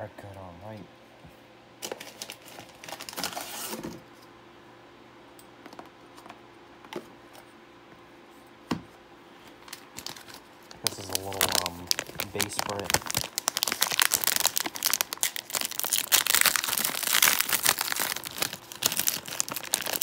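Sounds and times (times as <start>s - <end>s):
packaging crinkling: 1.8s - 3.7s, 9.6s - 20.0s.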